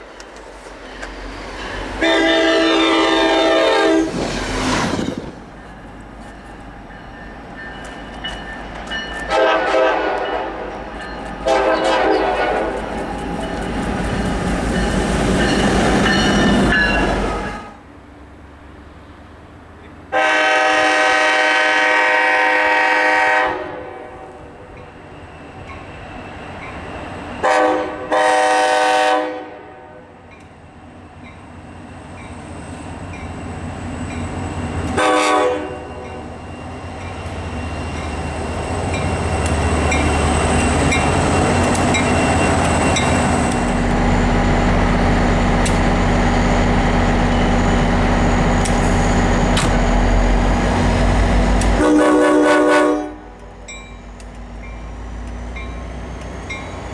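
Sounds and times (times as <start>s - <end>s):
train rumble: 0.0s - 56.9s
locomotive air horn blasts: 2.0s - 4.2s, 9.3s - 10.7s, 11.4s - 12.8s, 17.2s - 17.8s, 20.1s - 24.3s, 27.4s - 30.2s, 35.0s - 36.0s, 51.7s - 53.4s.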